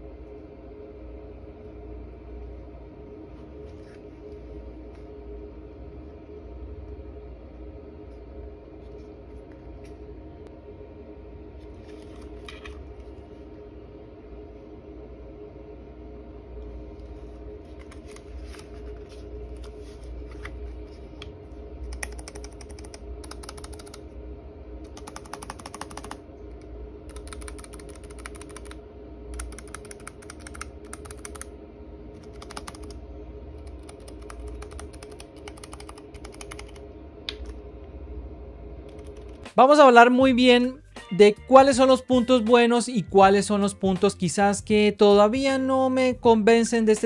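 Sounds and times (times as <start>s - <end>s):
mechanical keyboard typing: 21.8s - 24.0s, 24.9s - 26.2s, 27.1s - 28.8s, 29.4s - 31.5s, 32.2s - 33.0s, 33.6s - 36.8s, 38.8s - 39.4s.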